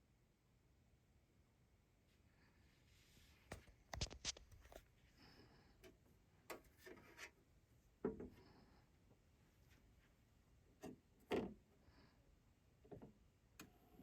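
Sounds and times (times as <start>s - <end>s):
hands handling a turntable: 3.5s - 4.8s.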